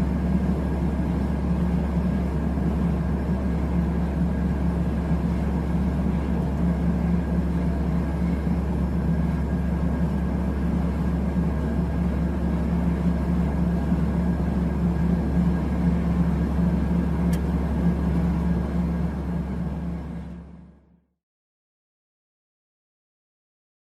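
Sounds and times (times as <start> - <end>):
turboprop engines idling: 0.0 - 21.0
faint click: 17.3 - 17.5.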